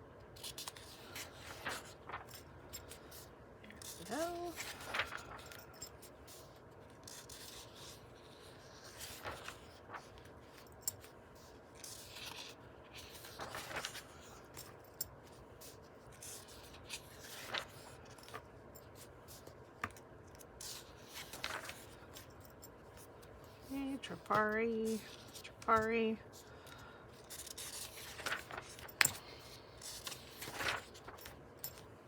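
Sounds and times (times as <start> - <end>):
paper rustling: 0.4 - 3.2, 3.8 - 31.9
pages swishing: 3.8 - 5.5, 30.0 - 31.3.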